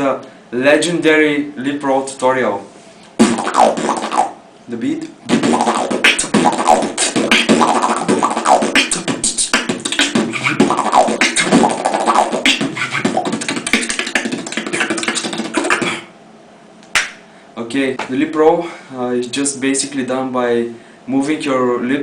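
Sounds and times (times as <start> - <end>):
human beatboxing: 3.1 - 4.4, 5.0 - 16.2.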